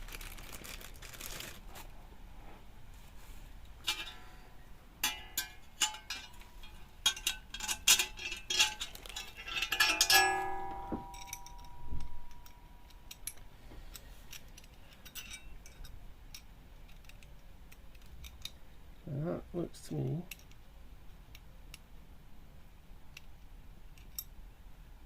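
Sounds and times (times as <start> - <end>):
metallic ring: 3.8 - 13.4
metal fasteners clinking: 3.8 - 18.6, 20.2 - 20.6, 23.1 - 24.4.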